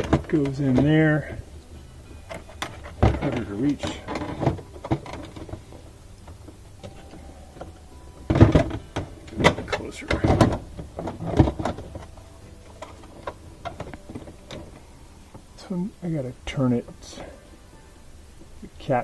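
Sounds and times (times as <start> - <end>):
plastic panel rubbing and scraping: 0.0 - 1.4, 2.3 - 7.7, 8.3 - 15.5.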